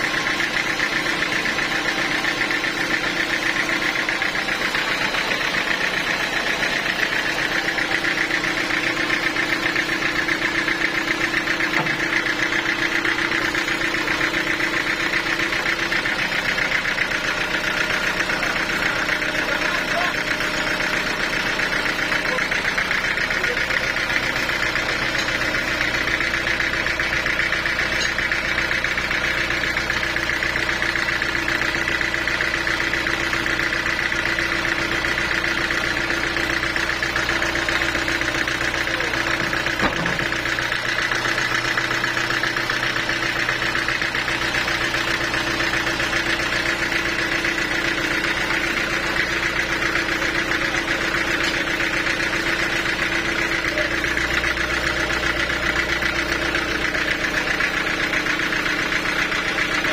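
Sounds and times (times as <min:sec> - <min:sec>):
high machine whine: 0:00.0 - 0:30.6
sawmill machinery droning: 0:00.0 - 0:59.9.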